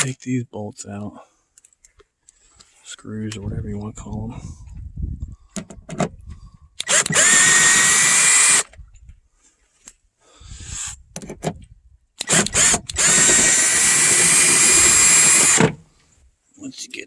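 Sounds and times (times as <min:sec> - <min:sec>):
power drill whining: 0:06.8 - 0:08.7, 0:12.2 - 0:15.9.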